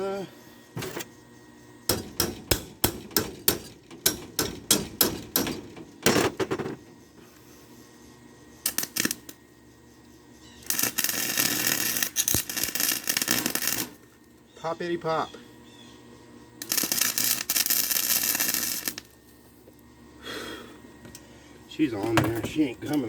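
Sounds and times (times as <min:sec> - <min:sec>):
hammer striking metal: 0:01.9 - 0:06.2
welding arc crackling hiss: 0:08.6 - 0:09.4, 0:10.6 - 0:15.2, 0:16.6 - 0:19.8.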